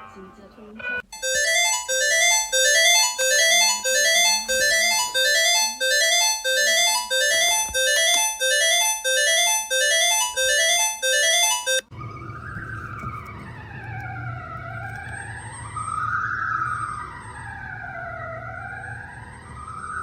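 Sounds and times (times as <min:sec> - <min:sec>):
electronic two-note alarm tone: 0:01.2 - 0:11.8.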